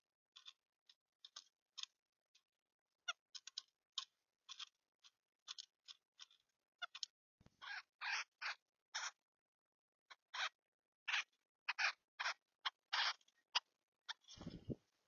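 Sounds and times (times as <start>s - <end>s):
small bird chirping: 3.0s - 9.3s, 10.1s - 14.8s.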